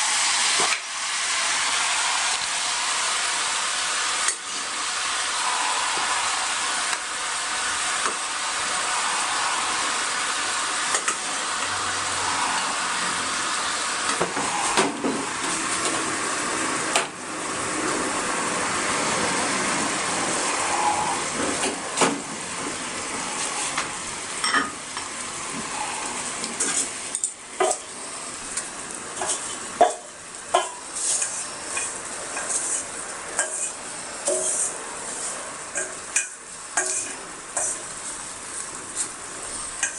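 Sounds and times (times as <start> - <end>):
food sizzling in a frying pan: 0.0 - 39.9
utensil scraping a pan: 29.2 - 30.0, 30.6 - 37.9.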